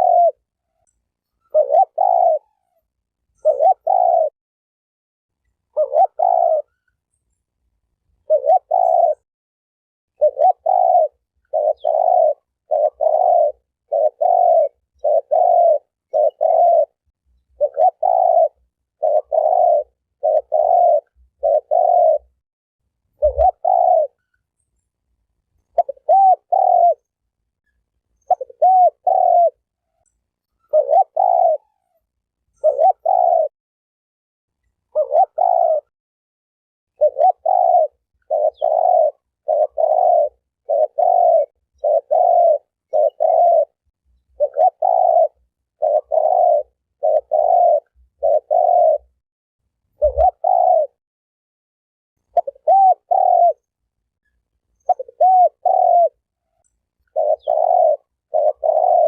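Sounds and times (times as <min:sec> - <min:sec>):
dove cooing: 0:00.0 - 0:00.8, 0:01.4 - 0:02.8, 0:03.4 - 0:04.4, 0:05.7 - 0:06.9, 0:08.2 - 0:09.3, 0:10.2 - 0:22.4, 0:23.2 - 0:24.3, 0:25.6 - 0:27.2, 0:28.2 - 0:30.0, 0:30.6 - 0:33.5, 0:34.8 - 0:35.9, 0:37.0 - 0:49.2, 0:49.9 - 0:51.0, 0:52.2 - 0:53.7, 0:54.8 - 0:59.0.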